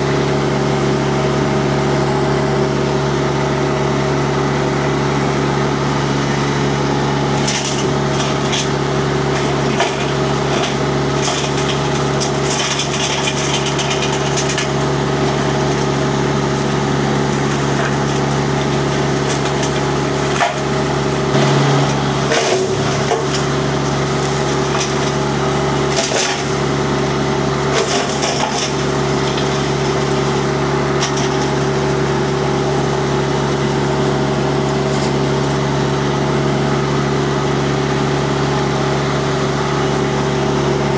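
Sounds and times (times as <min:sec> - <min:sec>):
diesel engine running under load: 0:00.0 - 0:40.9
wood crackling and splintering: 0:07.1 - 0:39.4.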